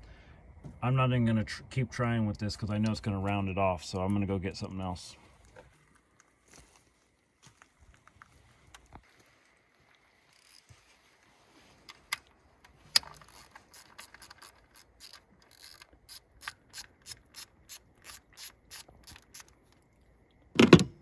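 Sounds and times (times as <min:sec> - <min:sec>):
socket ratchet clicking: 0:13.0 - 0:19.6.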